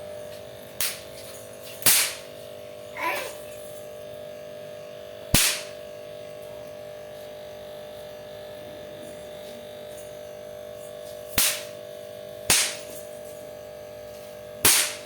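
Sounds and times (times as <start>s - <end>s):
firecracker crack: 0.8s - 2.5s, 5.3s - 5.8s, 11.3s - 11.8s, 12.4s - 13.1s, 14.6s - 15.0s.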